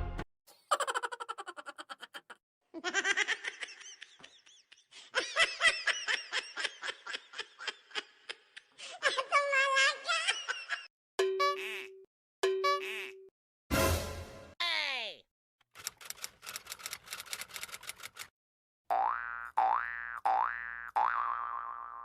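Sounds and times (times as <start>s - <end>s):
people laughing: 0.7s - 8.6s.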